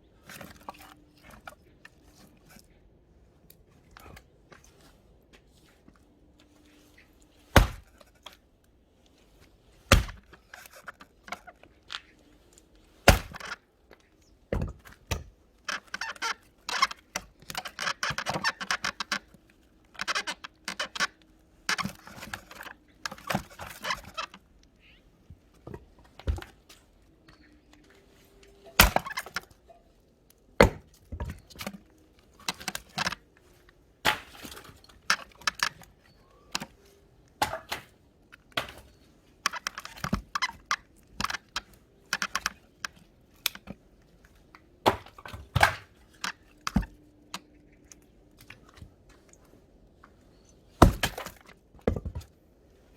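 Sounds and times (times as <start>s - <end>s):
wood crackling and splintering: 5.7s - 52.2s
blade striking wood: 7.6s - 7.9s, 9.9s - 10.3s, 13.0s - 13.5s, 28.8s - 29.4s, 30.6s - 30.9s, 34.0s - 34.7s, 38.6s - 38.9s, 50.8s - 51.3s.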